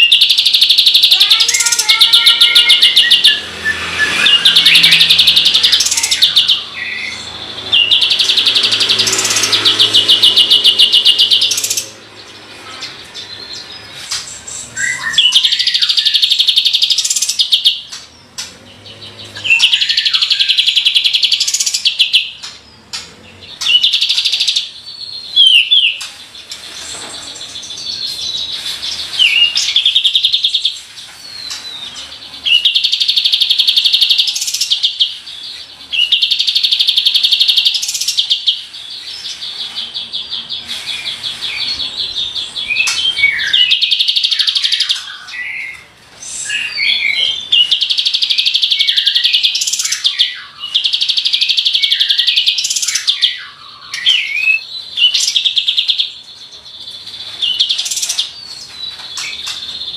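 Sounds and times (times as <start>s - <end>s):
bird whistled notes: 0.0s - 11.8s, 36.0s - 59.9s
bird singing rattling trills: 0.0s - 59.9s.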